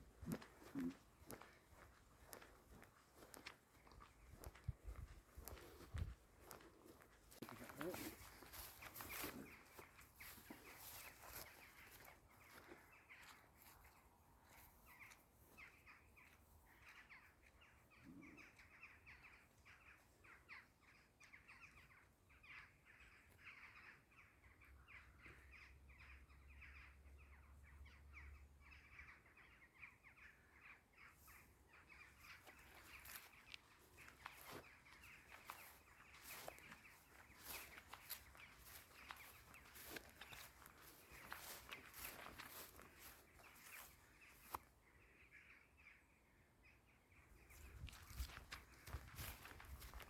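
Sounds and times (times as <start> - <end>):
footsteps crunching on a path: 0.0 - 20.0, 31.2 - 44.7, 47.3 - 50.0
distant bird calls: 0.0 - 50.0.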